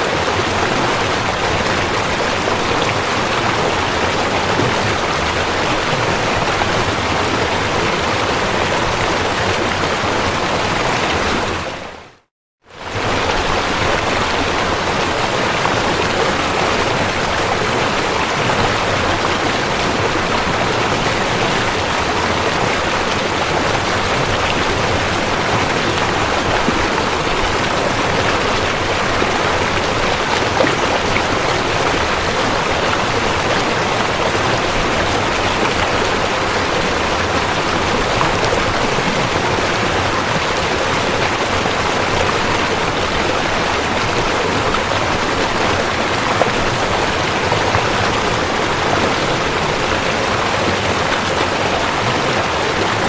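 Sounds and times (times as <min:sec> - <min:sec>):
river water rushing: 0:00.0 - 0:53.0.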